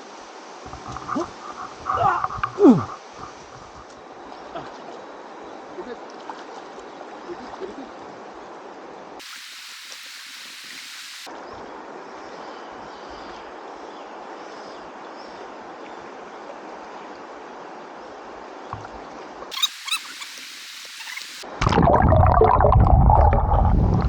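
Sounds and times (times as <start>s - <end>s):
river current rushing: 0.0s - 4.2s.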